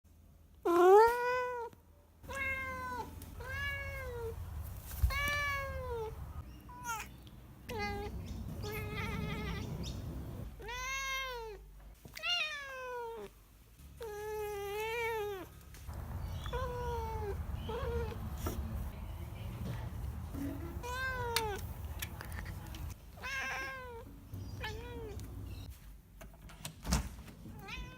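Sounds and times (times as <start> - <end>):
cat meowing: 0.7 - 4.4, 5.0 - 13.3, 14.0 - 18.6, 20.8 - 21.7, 23.2 - 25.6, 27.5 - 27.9.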